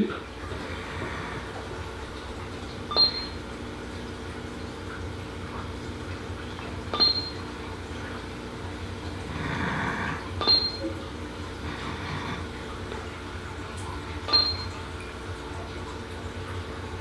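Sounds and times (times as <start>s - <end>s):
steady low hum: 0.0s - 17.0s
short high beeps: 2.9s - 3.4s, 6.9s - 7.4s, 10.4s - 10.9s, 14.3s - 14.8s.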